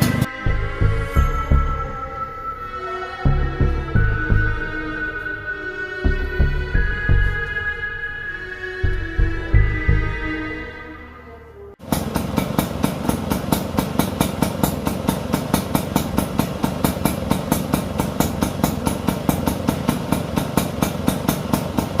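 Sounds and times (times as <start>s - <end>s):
scooter engine idling: 0.0s - 1.3s, 11.8s - 22.0s.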